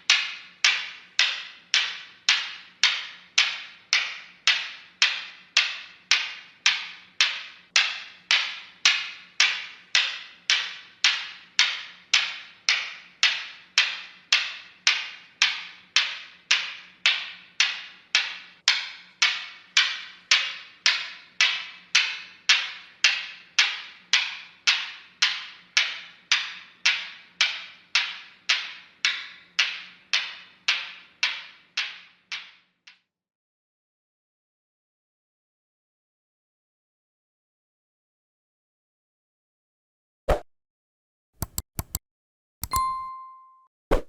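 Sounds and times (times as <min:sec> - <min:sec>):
steel balls clacking together: 0:00.0 - 0:32.6.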